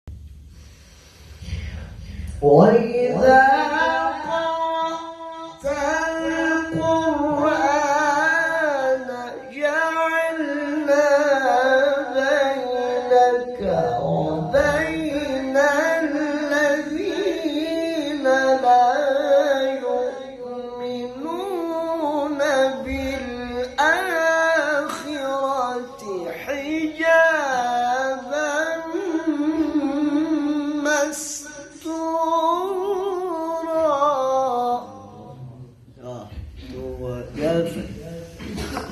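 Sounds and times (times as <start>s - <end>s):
man reciting melodically: 1.4s - 38.9s.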